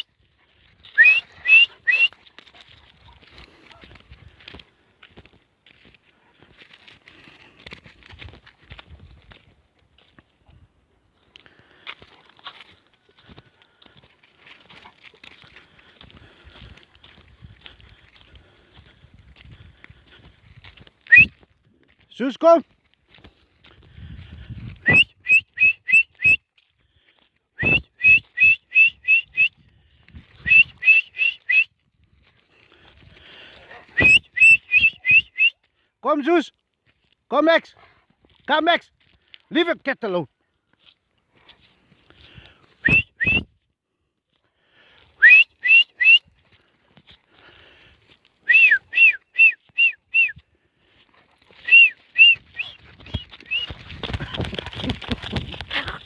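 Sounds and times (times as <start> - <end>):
person whistling rising notes: 1.0 - 2.1, 24.9 - 26.4, 27.6 - 29.5, 30.4 - 31.7, 34.0 - 35.6, 42.9 - 43.5, 45.2 - 46.2, 48.5 - 50.4, 51.6 - 53.8.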